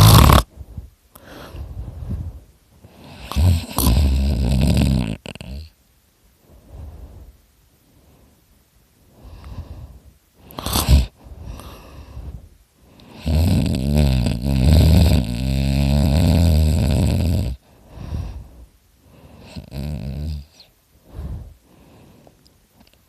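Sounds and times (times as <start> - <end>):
person snoring loudly: 0.0 - 0.5, 3.0 - 5.8, 10.4 - 12.0, 13.0 - 18.4, 19.4 - 21.5.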